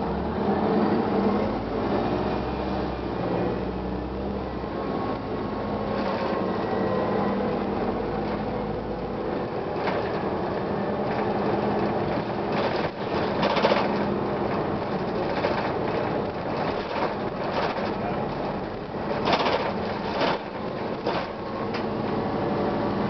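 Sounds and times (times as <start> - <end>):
bus engine hum: 0.0 - 23.0
bus ride rumble: 0.0 - 23.0.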